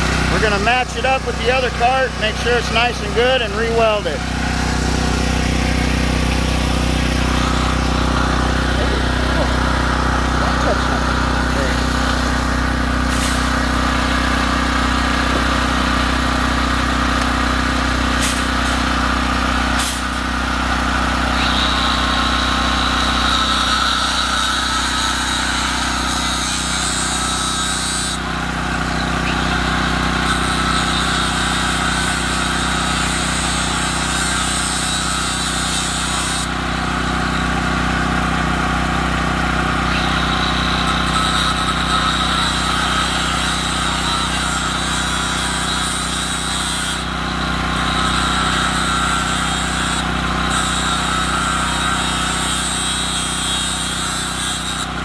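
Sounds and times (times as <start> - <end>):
engine idling: 0.0 - 23.3, 28.2 - 31.6, 36.5 - 41.1, 47.0 - 49.1, 49.8 - 50.6.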